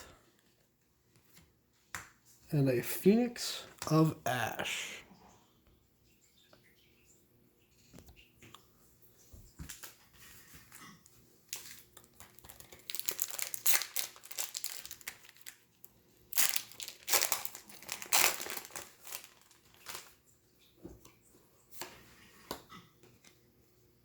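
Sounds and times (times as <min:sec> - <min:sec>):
foil wrapper tearing and crinkling: 0:11.5 - 0:15.6, 0:16.3 - 0:20.2
cards crackling: 0:11.6 - 0:15.6, 0:16.4 - 0:20.1.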